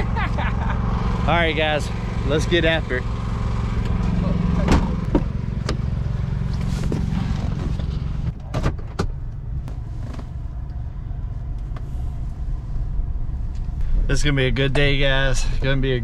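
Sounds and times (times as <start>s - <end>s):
truck engine running: 0.0s - 8.5s.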